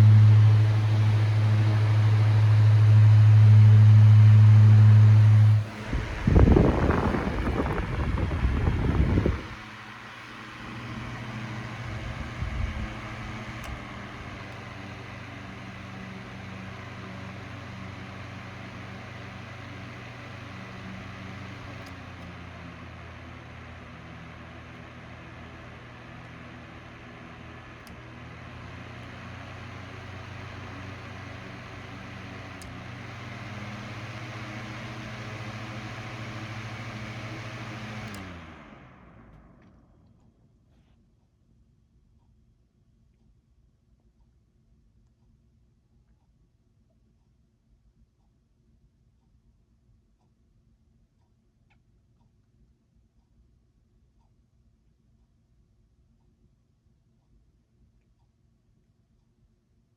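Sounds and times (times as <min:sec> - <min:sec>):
fan blowing air: 0:00.0 - 0:39.6
low motor hum: 0:00.0 - 0:40.4
fan switch click: 0:05.7 - 0:15.0.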